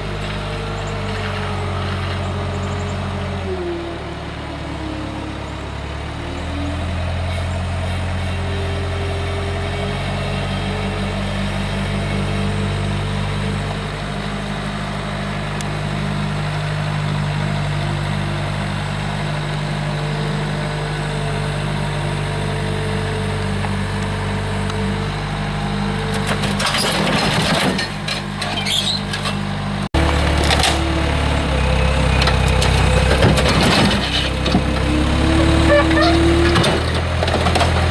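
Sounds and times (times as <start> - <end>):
truck engine running: 29.6 - 37.9
crunching and cracking clatter: 30.0 - 37.9.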